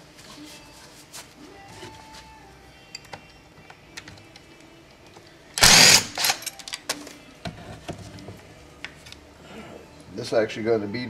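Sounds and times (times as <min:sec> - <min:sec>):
power tool burst: 0:05.6 - 0:06.4
metal parts clicking and clinking: 0:06.0 - 0:07.0.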